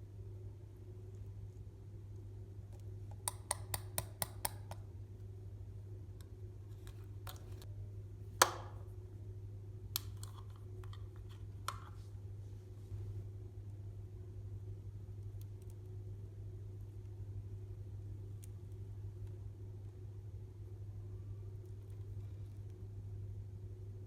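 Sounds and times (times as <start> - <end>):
steady low hum: 0.0 - 24.0
slime clicking and popping: 3.3 - 4.8.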